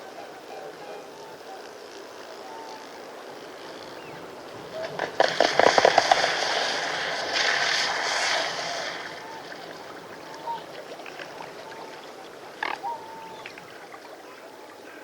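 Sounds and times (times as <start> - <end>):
splashing water: 4.5 - 14.2
swan calls: 8.5 - 15.0.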